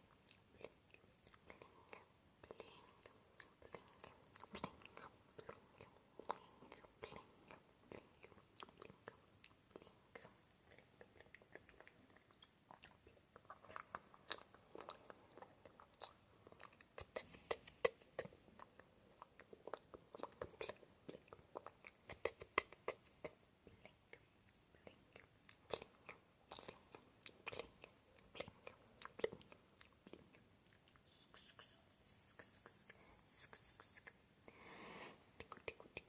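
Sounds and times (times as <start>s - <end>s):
lip and tongue clicks: 7.5s - 34.2s.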